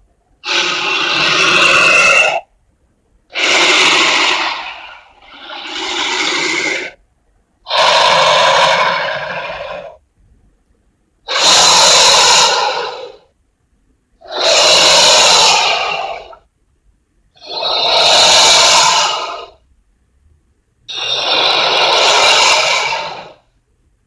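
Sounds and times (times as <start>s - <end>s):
breathy snake hisses: 0.4s - 2.4s, 3.3s - 7.0s, 7.7s - 10.0s, 11.3s - 13.3s, 14.2s - 16.4s, 17.4s - 19.6s, 20.9s - 23.5s.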